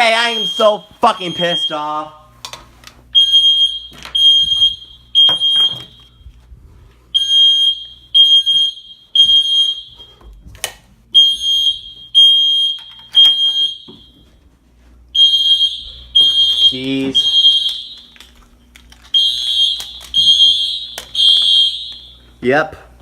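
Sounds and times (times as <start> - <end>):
fire alarm beeping: 0.0 - 2.3, 3.1 - 6.4, 7.1 - 10.4, 11.1 - 14.5, 15.1 - 22.6.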